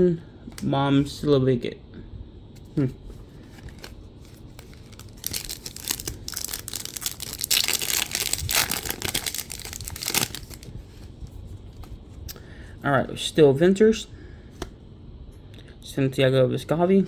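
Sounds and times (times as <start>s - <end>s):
wrapper tearing and crinkling: 3.7s - 10.7s.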